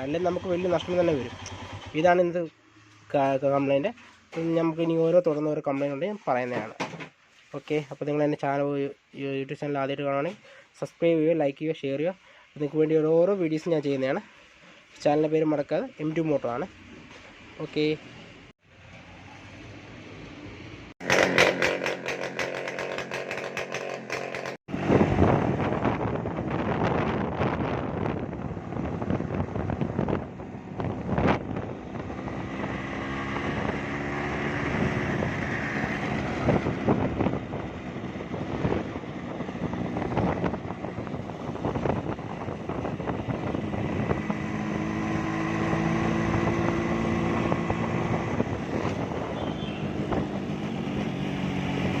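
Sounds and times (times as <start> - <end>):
knocks and clatters: 6.5 - 7.2, 21.0 - 24.6
small motorcycle engine running: 21.0 - 25.0.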